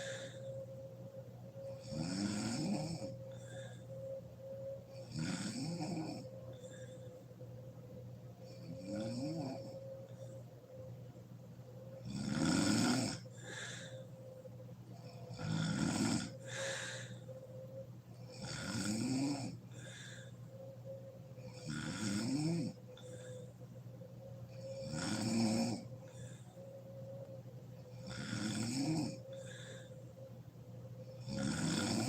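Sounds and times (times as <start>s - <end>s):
woman snoring loudly: 1.6s - 3.7s, 4.9s - 6.9s, 8.4s - 10.3s, 11.9s - 13.9s, 15.0s - 17.3s, 18.2s - 20.1s, 21.5s - 23.2s, 24.5s - 26.2s, 27.9s - 29.9s, 31.0s - 32.0s.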